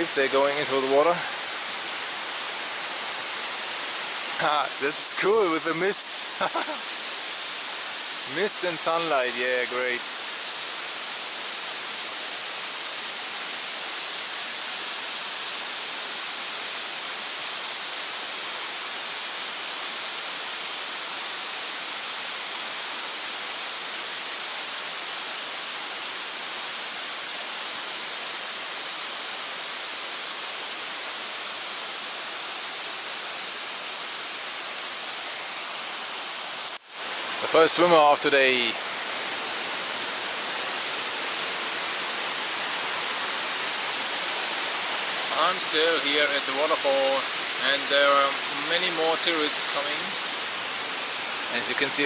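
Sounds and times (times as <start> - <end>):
waterfall rushing: 0.0 - 52.0.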